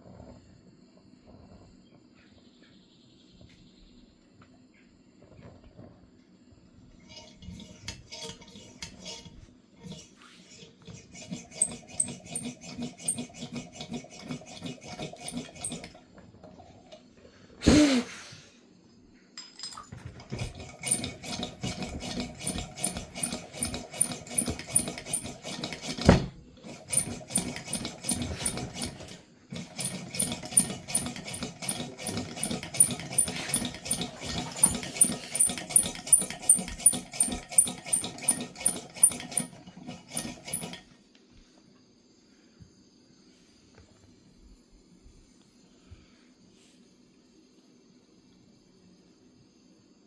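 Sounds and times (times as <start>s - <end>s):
hand pump strokes clicking: 11.1s - 16.0s, 20.6s - 40.8s
short squeak: 29.8s - 39.5s.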